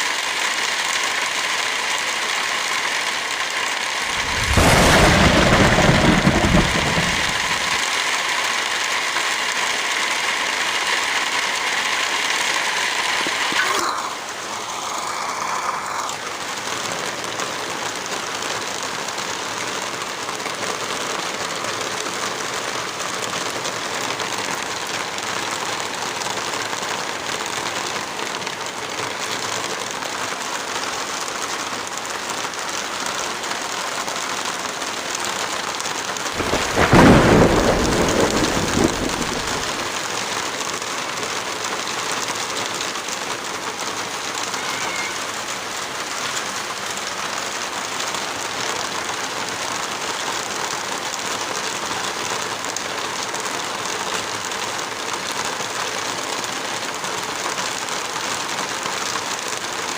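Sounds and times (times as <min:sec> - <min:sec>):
heavy rain falling: 0:00.0 - 0:59.9
thunder rumble: 0:04.1 - 0:08.0, 0:36.4 - 0:40.0.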